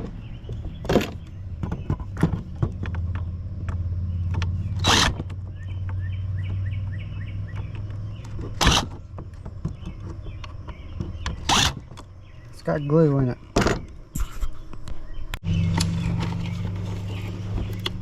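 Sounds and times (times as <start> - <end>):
plastic and metal clicks and knocks: 0.0 - 6.6
birds chirping: 0.0 - 18.0.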